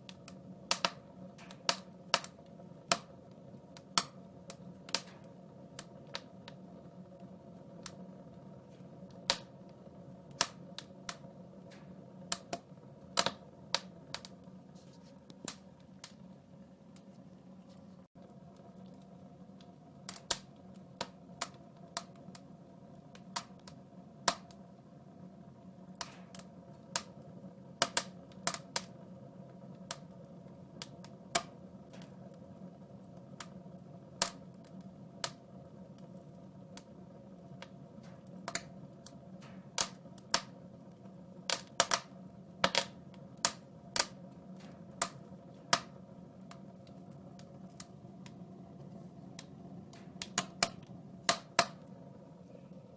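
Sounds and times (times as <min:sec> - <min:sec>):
steady low hum: 0:00.0 - 0:52.9
wood fire crackling: 0:00.0 - 0:52.9.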